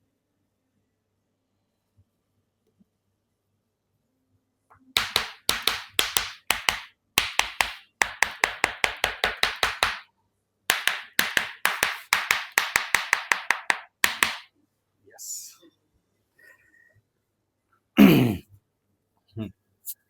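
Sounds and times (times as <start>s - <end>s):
rapid percussive taps: 5.0s - 10.0s, 10.7s - 14.5s.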